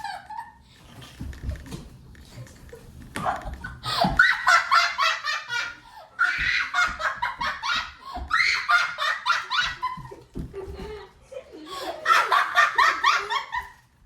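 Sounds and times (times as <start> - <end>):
children laughing: 0.0 - 0.8, 2.7 - 13.9.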